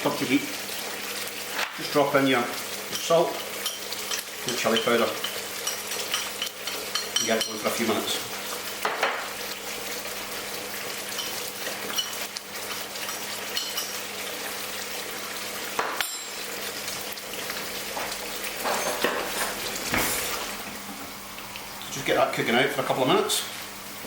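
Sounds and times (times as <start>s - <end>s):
sauce sizzling in a frying pan: 0.0s - 24.0s
utensil knocking on pan: 8.8s - 9.3s.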